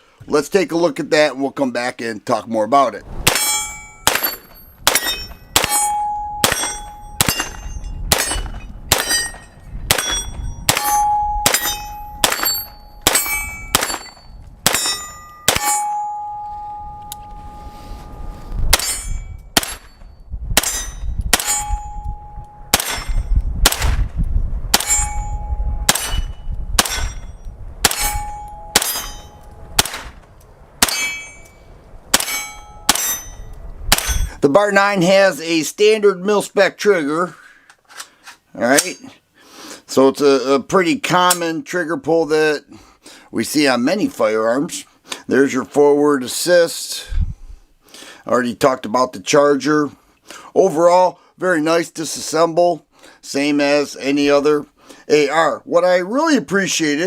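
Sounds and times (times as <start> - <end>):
wind rumble on microphone: 3.0 - 34.5, 47.1 - 47.7
pistol shots: 3.2 - 15.9, 22.7 - 24.1, 26.8 - 27.2, 27.8 - 30.2
metal target ringing ding: 3.4 - 17.4, 18.8 - 23.3, 24.9 - 29.5, 30.9 - 31.6, 32.2 - 34.3.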